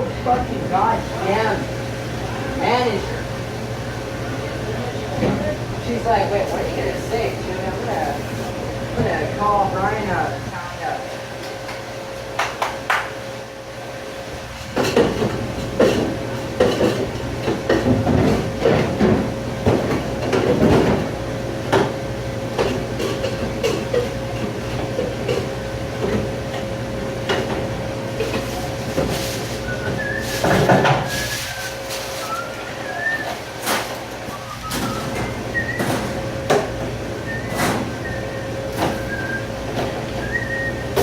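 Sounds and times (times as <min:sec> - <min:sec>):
steady machine hum: 0:00.0 - 0:41.0
dishes and racks clattering: 0:14.6 - 0:21.1, 0:21.7 - 0:41.0.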